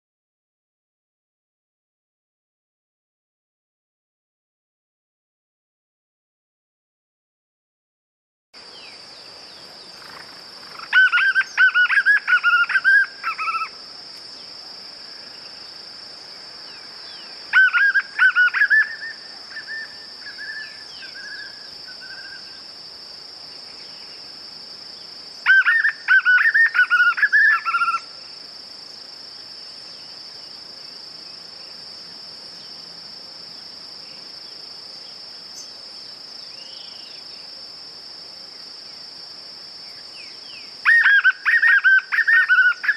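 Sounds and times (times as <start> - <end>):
high insect drone: 8.6 - 42.9
bird singing whistled notes: 8.7 - 13.8, 16.8 - 22.6, 25.5 - 28.1.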